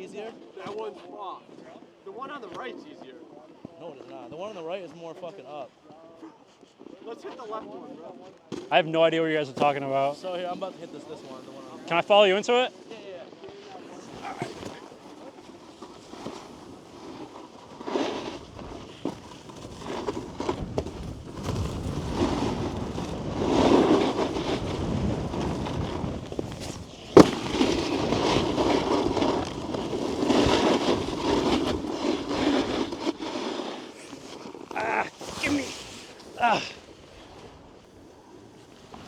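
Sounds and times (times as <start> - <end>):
snowboard scraping over snow: 9.1 - 39.0
snowboard landing smack: 14.0 - 36.4.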